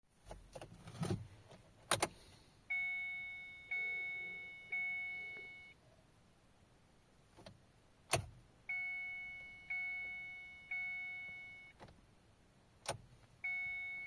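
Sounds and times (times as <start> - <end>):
dashboard warning chime: 2.7 - 5.8, 8.7 - 11.8, 13.4 - 14.0.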